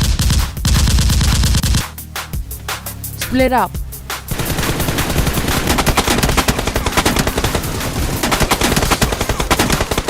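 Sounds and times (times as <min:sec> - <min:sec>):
machine-gun fire: 0:00.0 - 0:01.9, 0:04.3 - 0:10.0.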